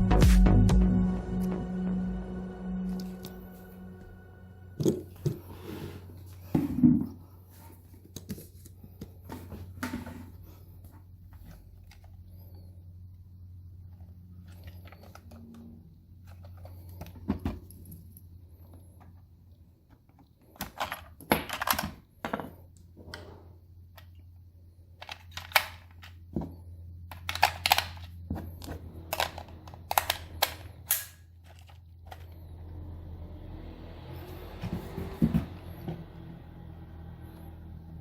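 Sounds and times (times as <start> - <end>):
low steady hum: 0.0 - 21.0
plastic toy parts clicking: 25.0 - 26.2, 27.1 - 28.2, 29.1 - 32.3.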